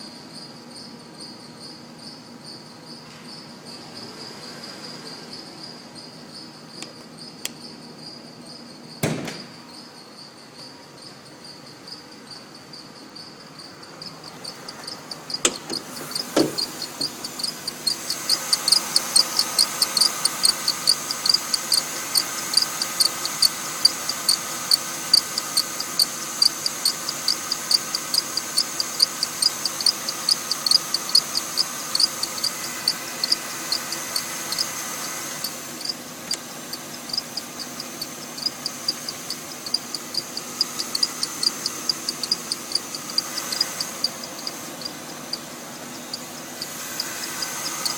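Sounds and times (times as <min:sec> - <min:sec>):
car engine running: 0:13.8 - 0:47.9
belt drive squeaking: 0:14.1 - 0:34.7, 0:35.4 - 0:45.4
sharp knocks: 0:15.4 - 0:17.3.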